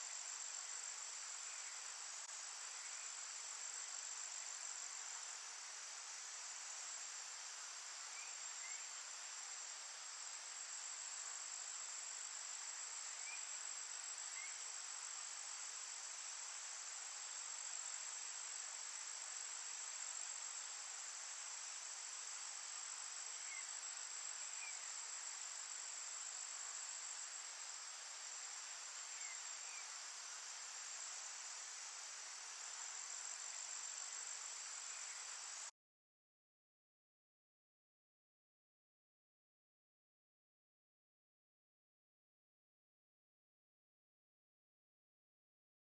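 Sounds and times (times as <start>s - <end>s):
chorus of insects: 0.0s - 35.7s.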